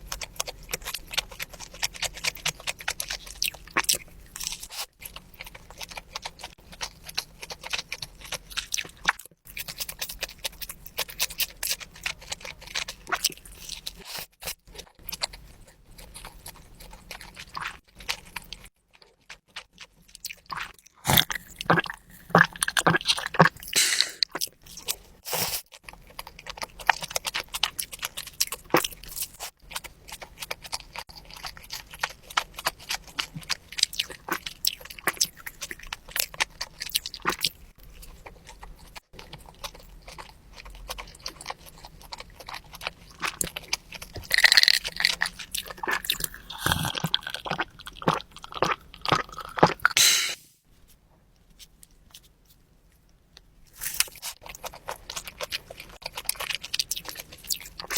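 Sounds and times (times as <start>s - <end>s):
chewing with wet mouth clicks: 0.0s - 25.1s, 25.7s - 50.0s, 53.0s - 57.9s
loud bites: 50.0s - 50.4s.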